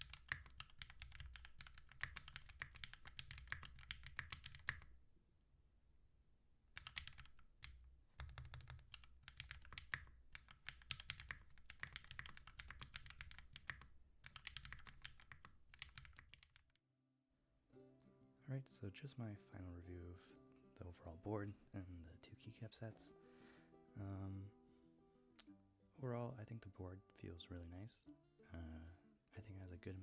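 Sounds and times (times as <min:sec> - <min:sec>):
mechanical keyboard typing: 0:00.0 - 0:04.9, 0:06.8 - 0:16.8.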